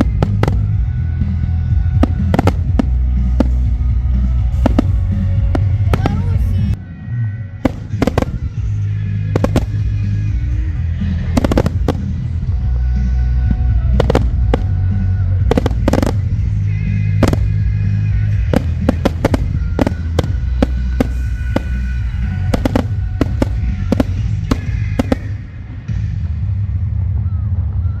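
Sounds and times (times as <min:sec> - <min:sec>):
fireworks bangs: 0:00.0 - 0:01.0, 0:01.7 - 0:06.8, 0:07.6 - 0:08.6, 0:09.2 - 0:12.4, 0:13.5 - 0:25.6
music with deep bass: 0:00.0 - 0:28.0.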